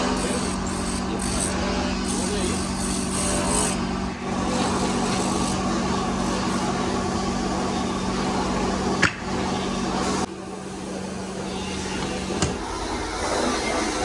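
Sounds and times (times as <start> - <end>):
woodworking machine humming: 0.0 - 6.9.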